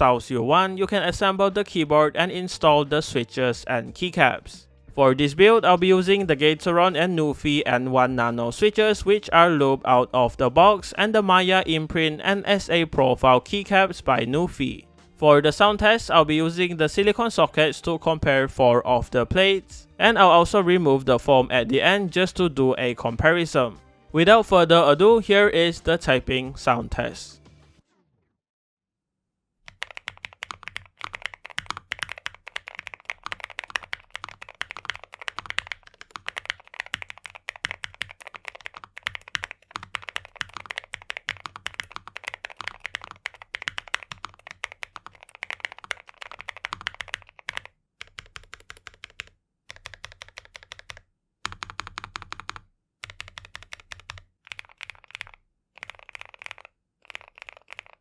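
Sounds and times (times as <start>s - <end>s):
mechanical keyboard typing: 29.7s - 58.0s.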